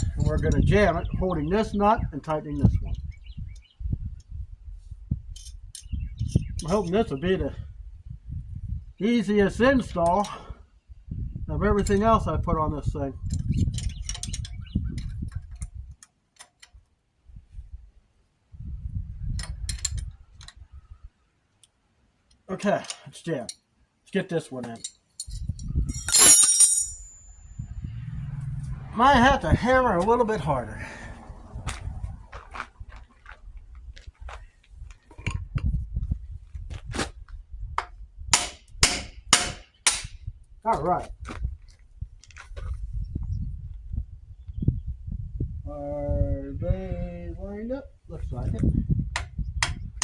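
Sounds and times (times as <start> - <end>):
handling noise: 25.2 - 27.4.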